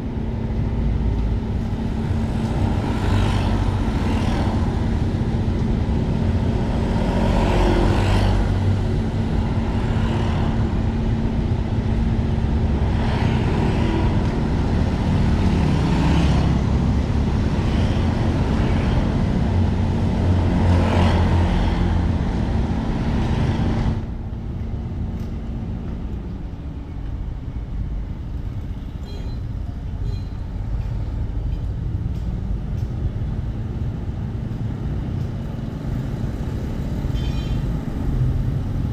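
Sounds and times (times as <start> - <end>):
passing traffic noise: 0.0 - 38.9
road noise hiss: 0.0 - 38.9
vehicle engine hum: 0.0 - 38.9.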